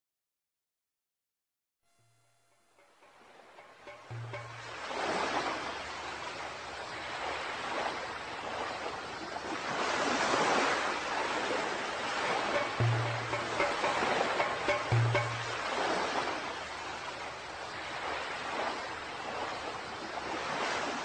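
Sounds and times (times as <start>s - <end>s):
low held musical note: 1.9s - 6.4s, 12.2s - 16.6s
ocean waves washing in: 3.0s - 21.0s.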